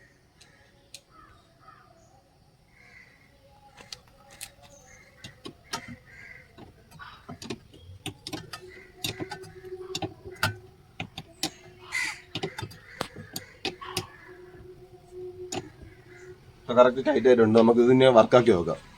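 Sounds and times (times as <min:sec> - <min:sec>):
faint steady hum: 0:00.0 - 0:18.9
spanner clicking on nut: 0:04.3 - 0:16.4.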